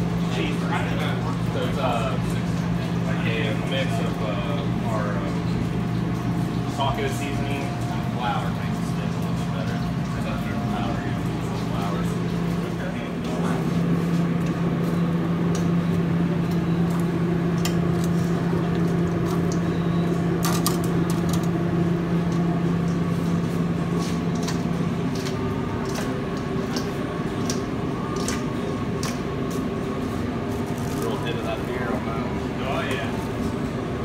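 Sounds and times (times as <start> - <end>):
appliance hum: 0.0 - 34.0.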